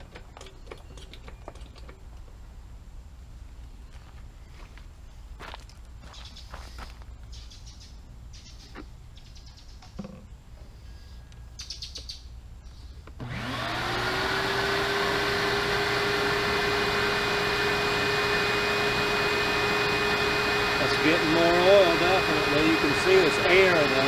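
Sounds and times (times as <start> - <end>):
short bird chirps: 10.8 - 13.0
shop vacuum whine: 13.2 - 24.0.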